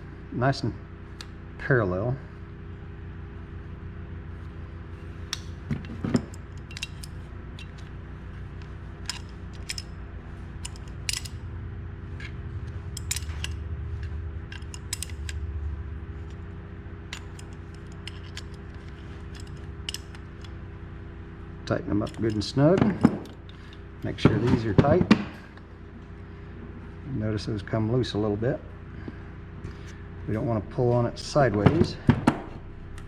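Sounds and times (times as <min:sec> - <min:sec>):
low hum: 0:00.0 - 0:33.0
light metal clicks and taps: 0:10.6 - 0:11.4, 0:13.0 - 0:15.4.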